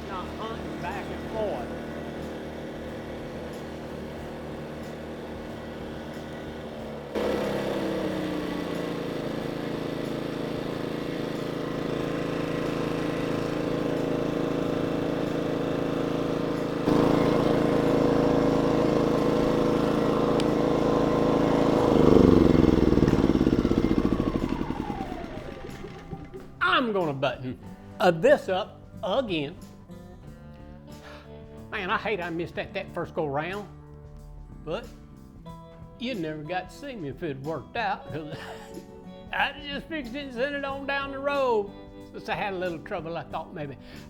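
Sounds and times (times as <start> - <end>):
small generator engine running: 0.0 - 26.9
engine winding down: 0.0 - 27.1.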